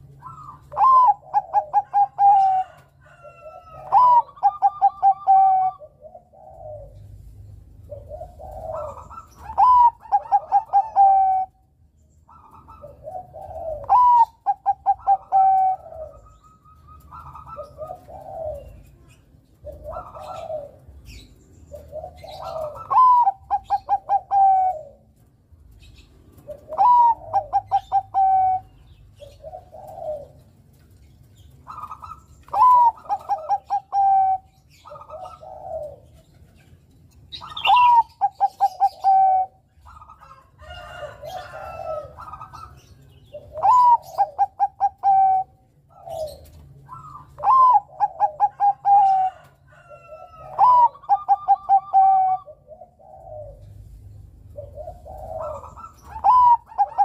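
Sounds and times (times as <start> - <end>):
dove cooing: 0.0 - 57.0.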